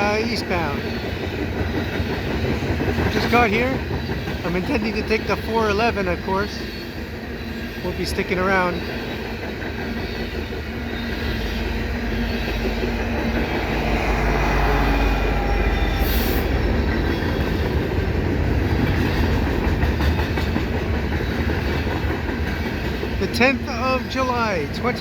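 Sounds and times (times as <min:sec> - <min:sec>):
train wheels rumbling on rails: 0:00.0 - 0:25.0.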